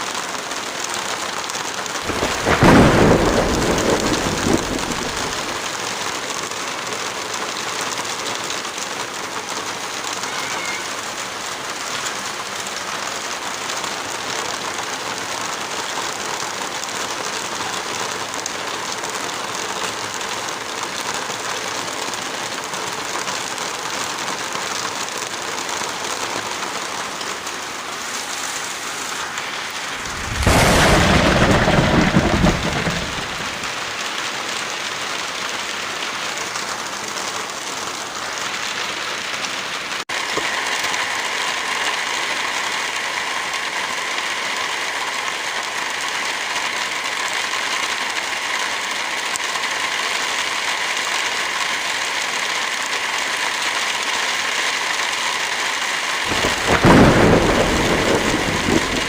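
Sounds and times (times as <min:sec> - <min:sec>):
heavy rain: 0:00.0 - 0:59.0
loud deep rumble: 0:29.9 - 0:33.7.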